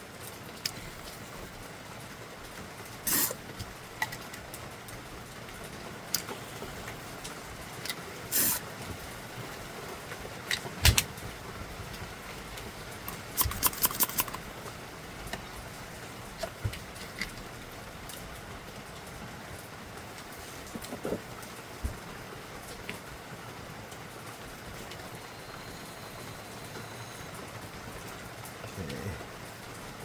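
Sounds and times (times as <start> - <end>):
plastic printer parts clicking: 13.1 - 14.4.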